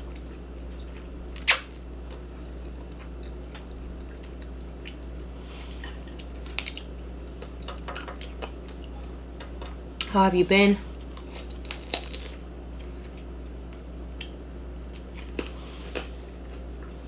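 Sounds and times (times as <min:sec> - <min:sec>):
close chewing: 0:00.0 - 0:09.8, 0:11.0 - 0:17.0
mouth clicks: 0:01.4 - 0:01.7
crunchy bite: 0:01.4 - 0:01.8.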